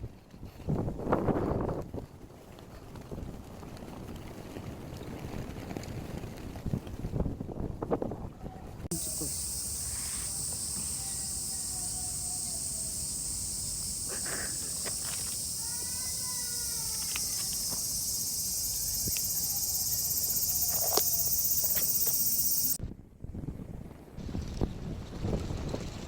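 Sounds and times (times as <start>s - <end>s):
faint short calls: 8.9s - 22.8s
insect chorus buzzing: 8.9s - 22.8s.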